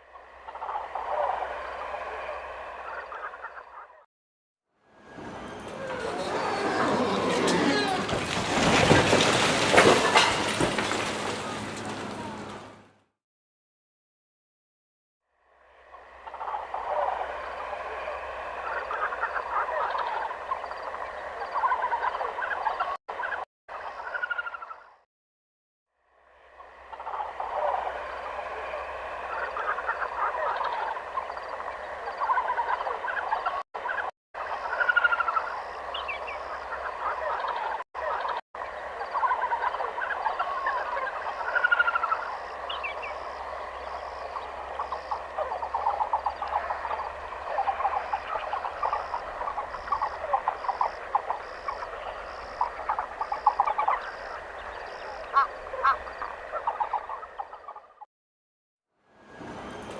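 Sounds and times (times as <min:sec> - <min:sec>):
forest animal calls chorus: 0:05.6 - 0:08.2, 0:15.9 - 0:24.8, 0:26.6 - 0:57.8.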